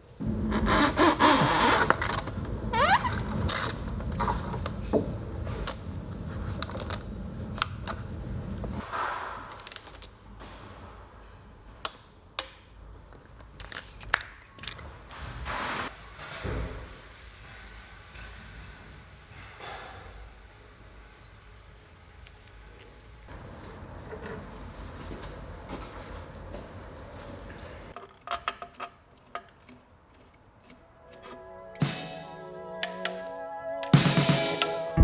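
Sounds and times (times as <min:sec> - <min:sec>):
low rumble: 0:01.8 - 0:08.8.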